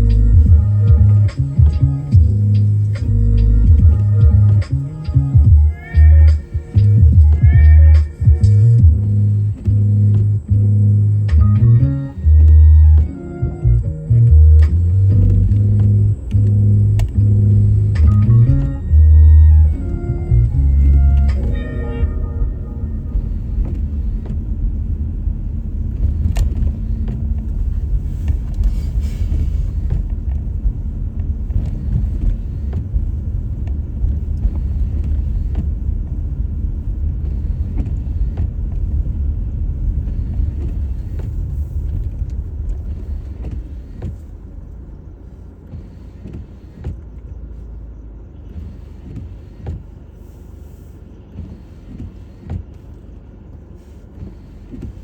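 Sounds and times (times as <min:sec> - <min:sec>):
knocks and clicks: 0:00.0 - 0:24.8
car engine and tyres rumbling: 0:00.0 - 0:55.0.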